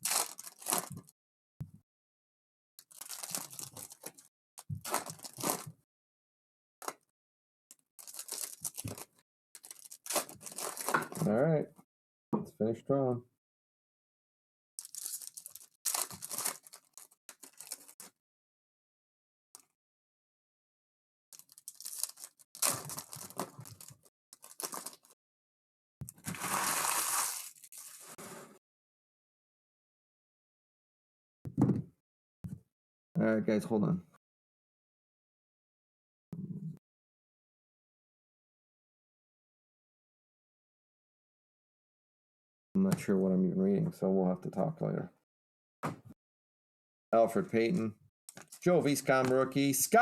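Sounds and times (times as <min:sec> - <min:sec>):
card wrappers tearing and crinkling: 0:00.0 - 0:01.0, 0:02.9 - 0:05.7, 0:08.0 - 0:11.2, 0:14.8 - 0:18.1, 0:21.4 - 0:25.1, 0:26.2 - 0:28.2, 0:48.4 - 0:49.5
foil pack ripping: 0:00.0 - 0:01.0, 0:02.9 - 0:05.7, 0:08.0 - 0:11.1, 0:14.8 - 0:18.0, 0:21.4 - 0:25.1, 0:26.2 - 0:28.2.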